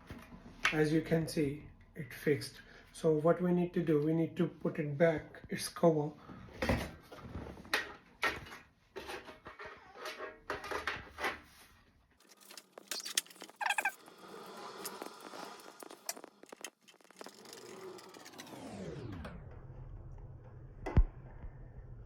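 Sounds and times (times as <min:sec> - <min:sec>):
high squeak: 0:12.9 - 0:14.0.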